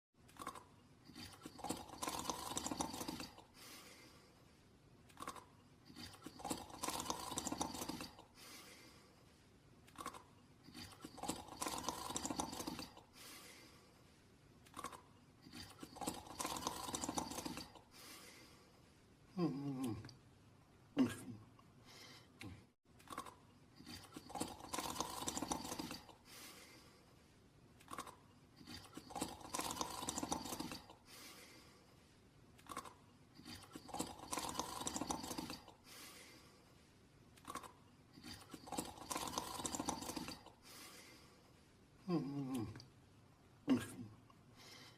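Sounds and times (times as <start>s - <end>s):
person snoring: 0.4s - 4.1s, 5.2s - 8.7s, 10.0s - 13.7s, 14.8s - 18.5s, 19.4s - 20.1s, 23.8s - 26.9s, 27.9s - 31.8s, 32.7s - 36.5s, 37.5s - 41.3s, 42.0s - 42.8s, 43.7s - 44.2s.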